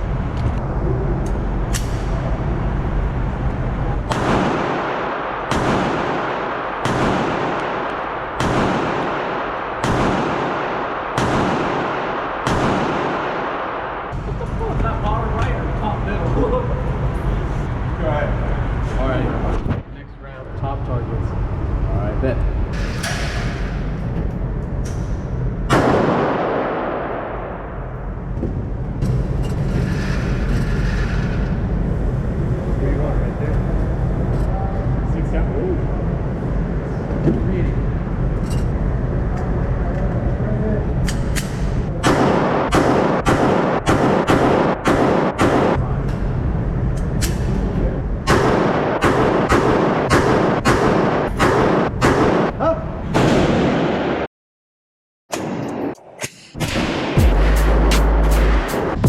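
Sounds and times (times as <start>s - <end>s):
steady low rumble: 0.0s - 52.1s, 55.8s - 59.0s
gunshots with ringing tail: 4.0s - 14.4s, 25.7s - 28.2s, 42.0s - 46.0s, 48.2s - 54.3s, 56.6s - 59.0s.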